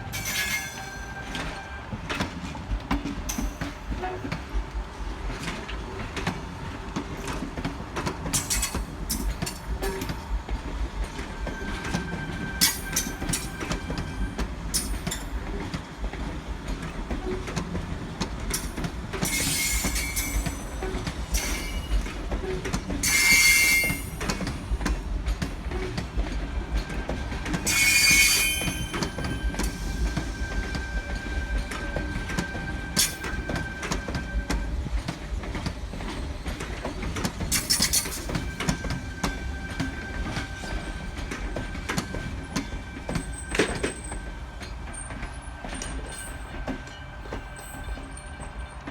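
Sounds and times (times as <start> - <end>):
low train rumble: 0.0 - 48.9
train wheels clicking over rail joints: 0.1 - 48.9
high-pitched wheel squeal: 23.0 - 24.2, 27.7 - 29.6.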